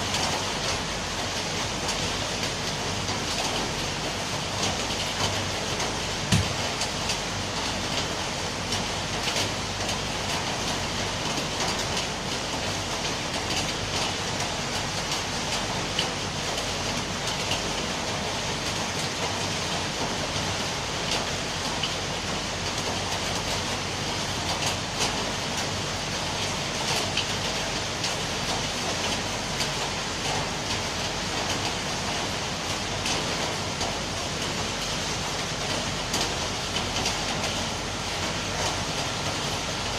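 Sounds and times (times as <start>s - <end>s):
heavy rainfall: 0.0s - 39.9s
low thump: 6.3s - 6.6s.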